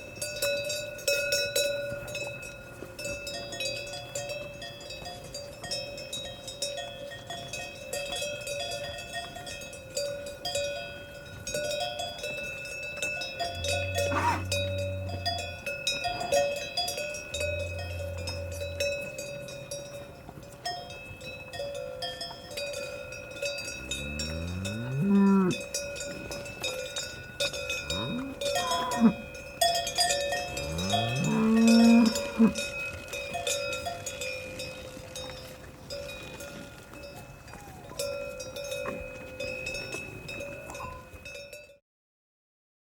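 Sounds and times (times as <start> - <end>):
cowbells clanking: 0.0 - 41.8
cows mooing: 13.4 - 16.5, 17.4 - 19.8, 23.7 - 25.7, 27.8 - 29.3, 30.3 - 32.7.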